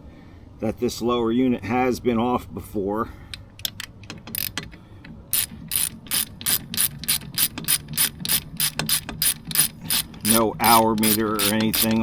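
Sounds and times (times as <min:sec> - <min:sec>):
ratchet wrench clicking: 0:03.6 - 0:04.7, 0:05.3 - 0:12.0.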